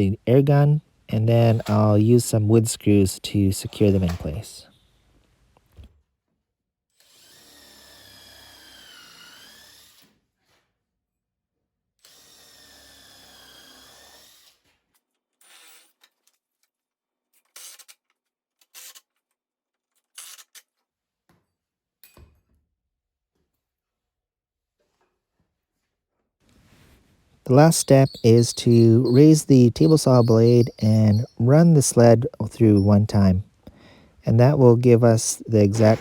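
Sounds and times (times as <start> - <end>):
power drill driving screws: 7.0 - 10.2, 12.0 - 14.7, 17.6 - 18.0, 20.2 - 20.6.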